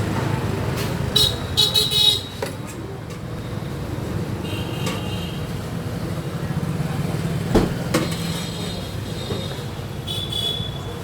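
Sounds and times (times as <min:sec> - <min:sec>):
traffic rumble: 0:02.5 - 0:09.8.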